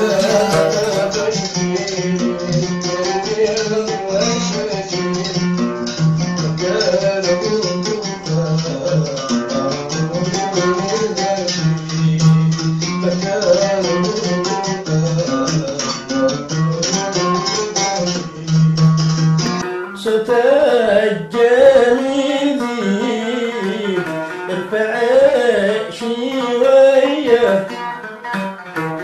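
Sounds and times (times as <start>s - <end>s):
rattling percussion: 0.0s - 1.4s
plucked string instrument: 0.0s - 29.0s.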